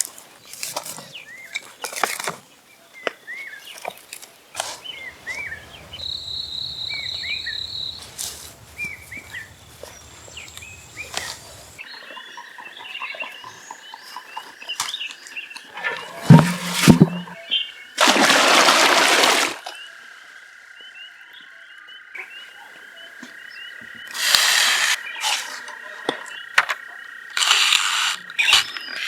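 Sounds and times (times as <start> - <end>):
small birds chirping: 4.6 - 15.6
insect buzz: 4.8 - 11.8.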